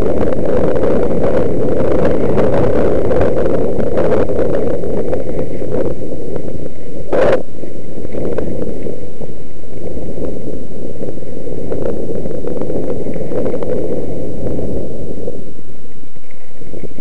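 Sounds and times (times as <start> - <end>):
wind buffeting microphone: 0.0 - 17.0.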